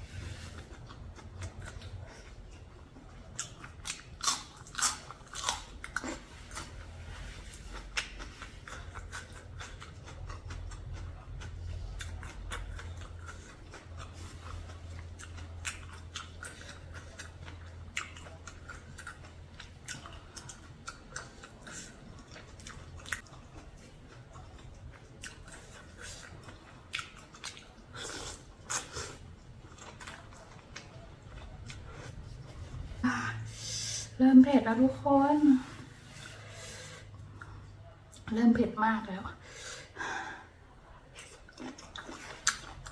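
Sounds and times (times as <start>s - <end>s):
person chewing and crunching food: 0.0s - 33.0s, 40.9s - 42.9s
low steady hum: 0.0s - 42.9s.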